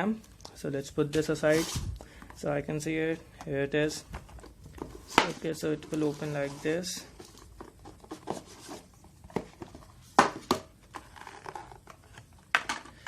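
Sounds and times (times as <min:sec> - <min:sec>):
packaging rustling: 0:04.1 - 0:10.0, 0:10.8 - 0:13.0.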